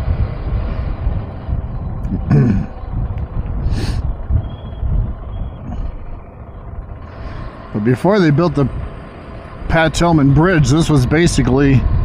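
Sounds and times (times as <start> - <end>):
wind on microphone: 0.0 - 7.6, 9.6 - 12.0
motorcycle engine rumble: 0.0 - 12.0
rider short vocal sound: 2.1 - 2.8.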